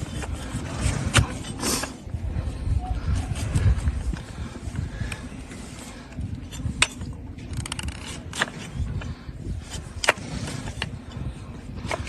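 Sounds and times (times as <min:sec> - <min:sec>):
fine scraping clicks: 0:05.1 - 0:12.0.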